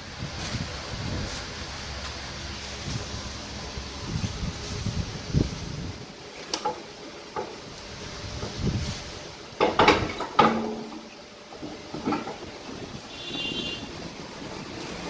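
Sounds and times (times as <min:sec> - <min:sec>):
objects knocking and clattering: 0:09.6 - 0:13.0.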